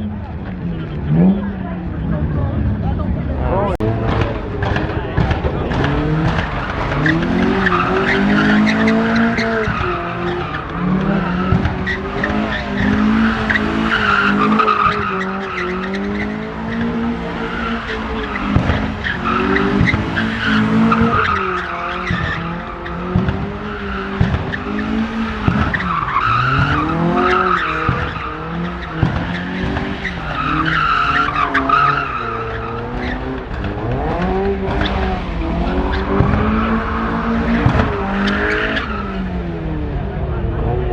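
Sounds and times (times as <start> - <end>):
car engine revving: 0.0 - 40.9.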